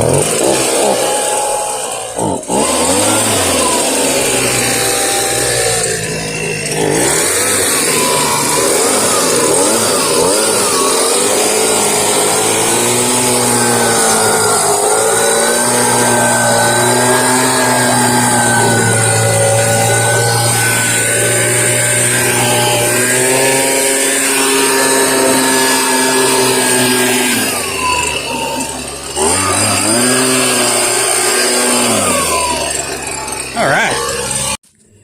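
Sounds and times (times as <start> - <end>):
leaf blower engine running: 0.0 - 35.0.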